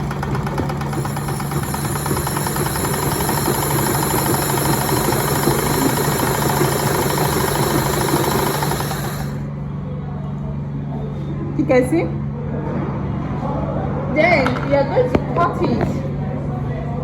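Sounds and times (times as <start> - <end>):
sewing machine clattering: 0.0 - 9.4
steady low hum: 0.0 - 10.8.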